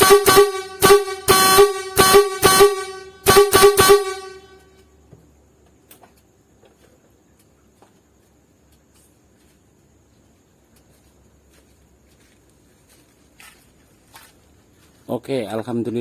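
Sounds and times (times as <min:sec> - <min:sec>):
truck air horn short blasts: 0:00.0 - 0:04.9.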